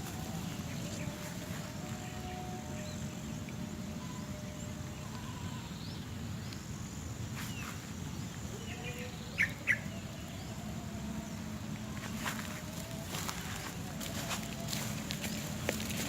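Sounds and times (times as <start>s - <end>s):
bird chirps: 7.4s - 16.0s.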